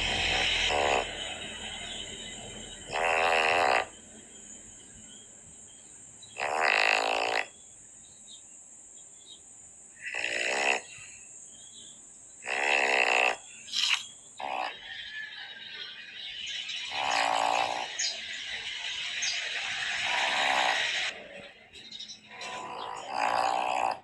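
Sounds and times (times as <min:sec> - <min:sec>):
dog snoring loudly: 0:00.0 - 0:04.0, 0:06.4 - 0:07.5, 0:10.0 - 0:10.9, 0:12.4 - 0:13.4, 0:16.9 - 0:18.1, 0:19.9 - 0:21.2, 0:22.4 - 0:24.0.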